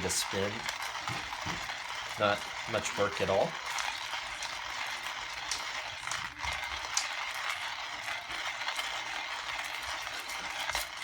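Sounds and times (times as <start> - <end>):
hand coffee grinder crushing beans: 0.0 - 11.0
sharp grinder clicks: 0.0 - 11.0.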